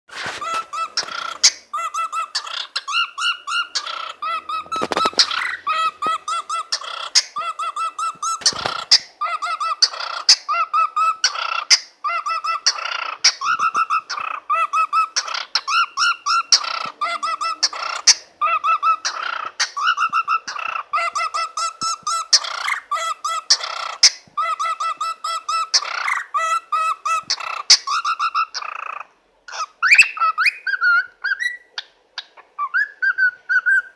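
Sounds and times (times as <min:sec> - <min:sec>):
cockatiel whistling warble: 0:00.2 - 0:11.2, 0:32.6 - 0:33.9
sharp bird clicks: 0:02.4 - 0:07.4.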